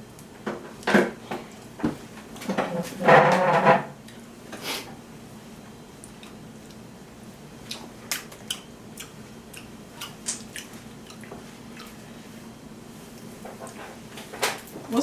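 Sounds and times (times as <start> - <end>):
faint steady hum: 0.0 - 15.0
wet chewing: 7.6 - 12.0.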